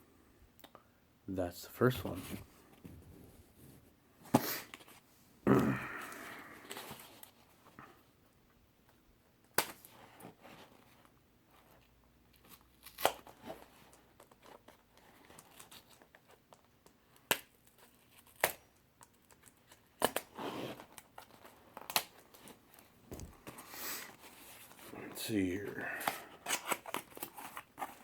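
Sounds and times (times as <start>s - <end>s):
cardboard being torn open: 12.4s - 14.8s
packaging rustling and crinkling: 19.0s - 24.9s, 25.6s - 28.0s.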